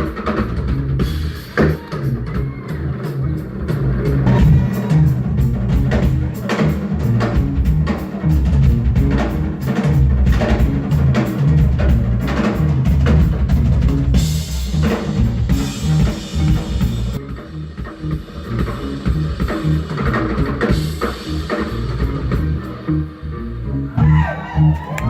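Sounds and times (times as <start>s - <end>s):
live band music: 0.0s - 25.0s
low bass line: 2.0s - 25.0s
drum hits: 4.2s - 17.2s.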